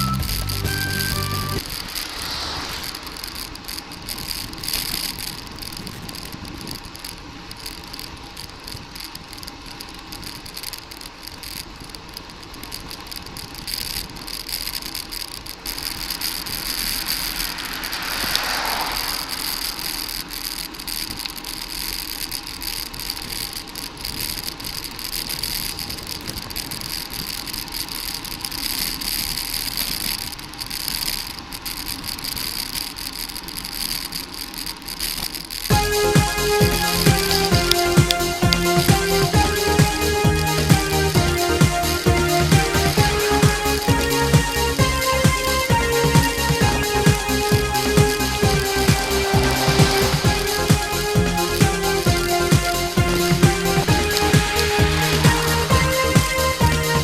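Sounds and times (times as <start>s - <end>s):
wind and road noise: 0.0s - 57.0s
car passing: 0.2s - 5.2s, 15.7s - 21.0s, 35.7s - 57.0s
bicycle rattling: 1.6s - 57.0s.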